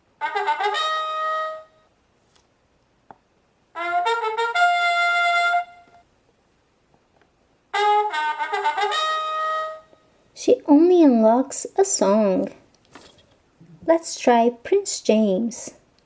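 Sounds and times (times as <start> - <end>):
toy playing electronic tune: 0.2 - 1.7, 3.8 - 6.0, 7.8 - 9.9.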